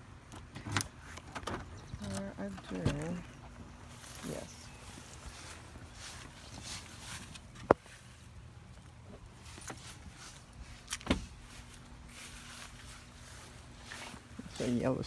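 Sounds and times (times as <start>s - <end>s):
low steady hum: 0.0s - 15.0s
heavy thump: 11.1s - 11.4s.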